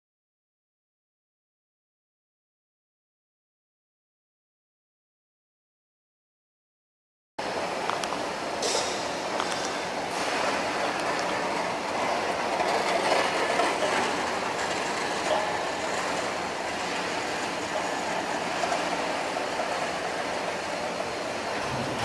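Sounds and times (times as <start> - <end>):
production line machinery running: 7.4 - 22.0.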